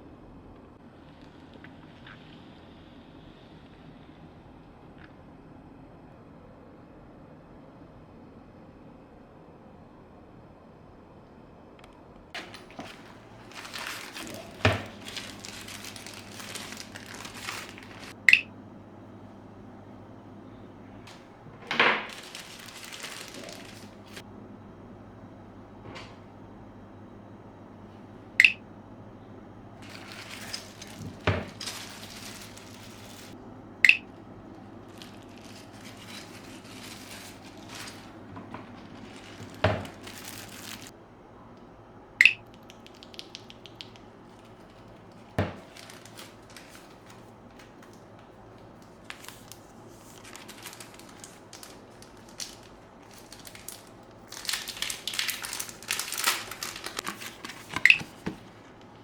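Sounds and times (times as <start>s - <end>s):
plastic crinkling: 12.4s - 18.2s, 21.1s - 24.2s, 29.8s - 40.9s, 42.5s - 59.0s.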